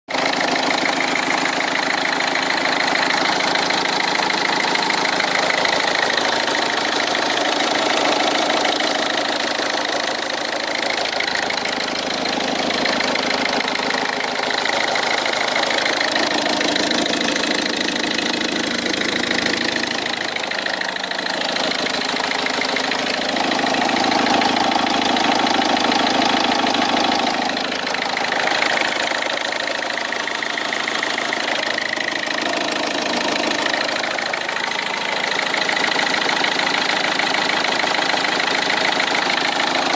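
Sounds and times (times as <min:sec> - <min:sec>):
engine running with clatter: 0:00.1 - 0:39.9.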